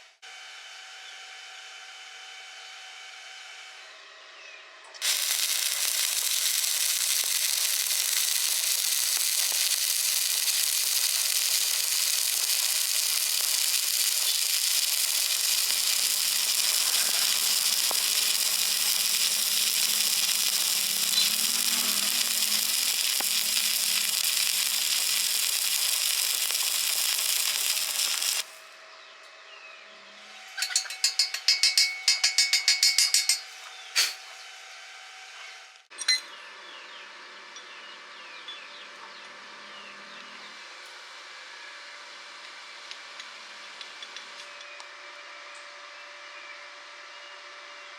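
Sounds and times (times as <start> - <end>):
welding arc sizzling crackle: 5.0 - 28.7, 30.6 - 34.3.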